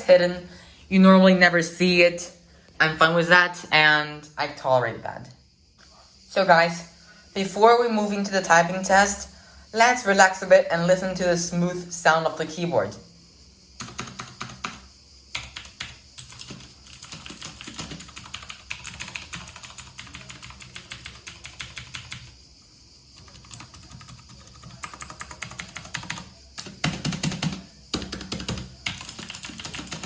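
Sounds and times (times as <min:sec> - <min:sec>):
clicky keyboard typing: 0:13.8 - 0:14.8, 0:15.4 - 0:22.3, 0:23.2 - 0:30.0.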